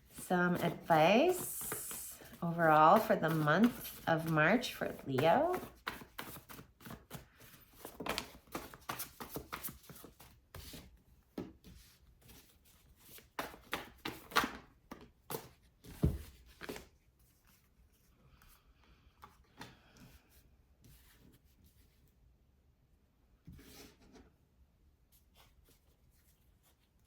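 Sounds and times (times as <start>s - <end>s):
cards being shuffled: 0.0s - 10.8s.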